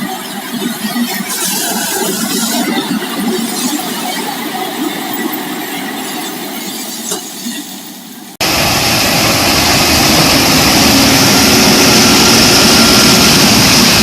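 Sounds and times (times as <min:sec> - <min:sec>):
harvester engine roar: 0:08.4 - 0:14.0.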